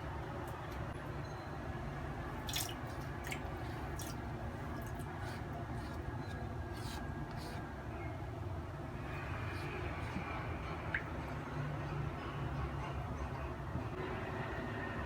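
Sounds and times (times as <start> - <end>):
low background hum: 0.0 - 14.0
water dripping and splashing: 2.4 - 6.0, 10.0 - 11.2
wet squelching: 2.4 - 6.1, 6.7 - 7.6.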